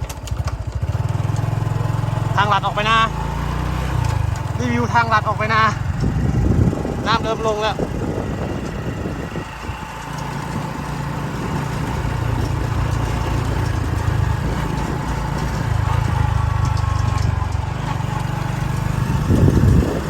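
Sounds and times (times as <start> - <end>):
small engine running: 0.0 - 20.0.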